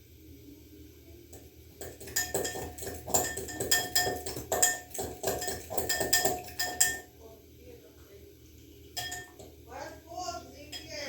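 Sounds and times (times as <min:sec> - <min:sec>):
dishes and cutlery clinking: 0:01.8 - 0:07.1, 0:09.0 - 0:09.6, 0:10.6 - 0:11.0.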